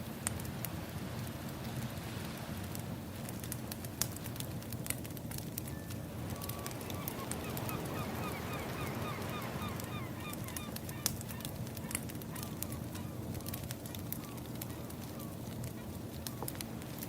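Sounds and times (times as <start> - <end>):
firewood crackling: 0.0 - 17.0
waves washing: 6.1 - 10.9
birds honking: 6.4 - 11.5.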